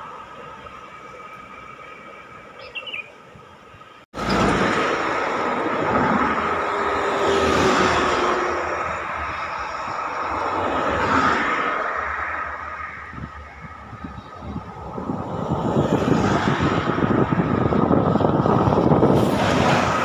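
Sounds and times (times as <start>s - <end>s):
road traffic passing: 0.0s - 20.0s.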